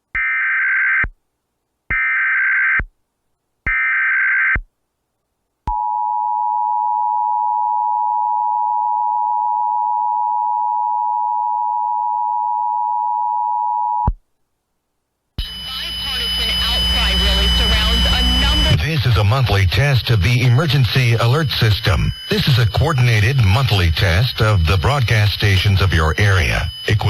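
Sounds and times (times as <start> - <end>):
digital data bursts: 15.4 - 27.0
two-tone attention signal: 15.4 - 27.0.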